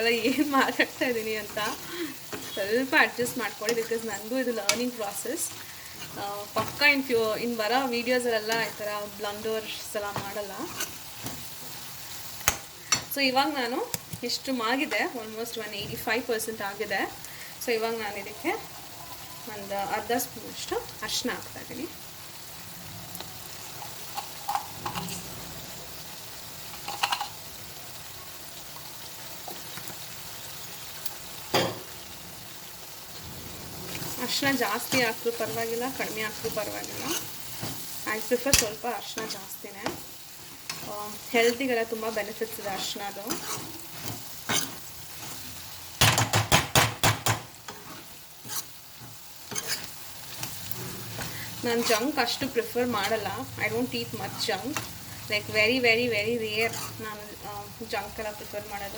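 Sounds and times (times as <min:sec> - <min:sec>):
tomatoes sizzling in a pan: 0:00.0 - 0:58.9
spoon knocking against pan: 0:46.0 - 0:47.5.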